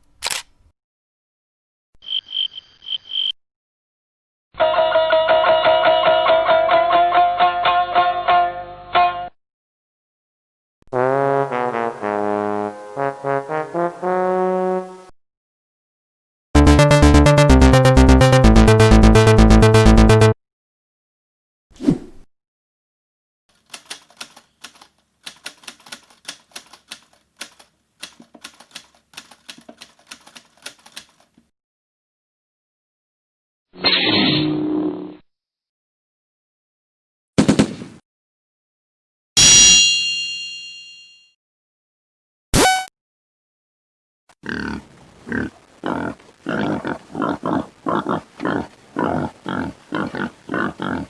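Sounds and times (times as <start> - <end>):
typewriter typing: 23.5 - 31.4
short sharp pitched blip: 42.6 - 42.9
pig grunting: 44.4 - 51.0.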